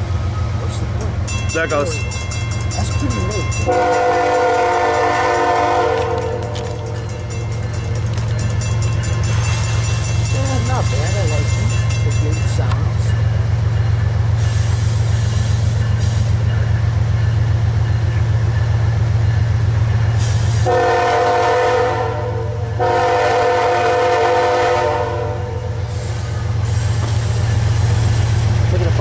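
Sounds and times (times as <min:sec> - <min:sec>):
diesel locomotive engine rumbling: 0:00.0 - 0:29.0
locomotive air horn blasts: 0:03.7 - 0:06.4, 0:20.6 - 0:25.8.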